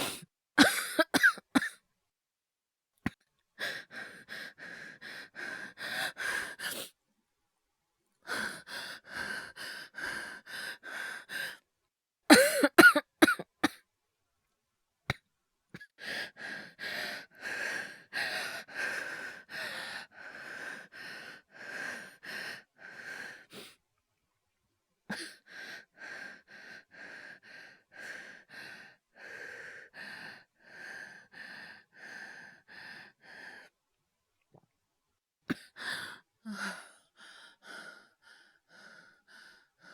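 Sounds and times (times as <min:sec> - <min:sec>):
man coughing: 0:00.6 - 0:01.8, 0:12.3 - 0:13.4.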